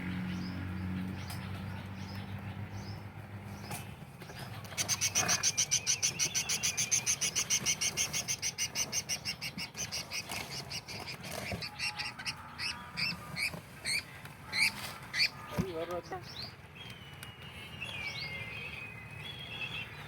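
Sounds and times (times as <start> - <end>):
small parrot chirping shrilly: 4.8 - 15.4.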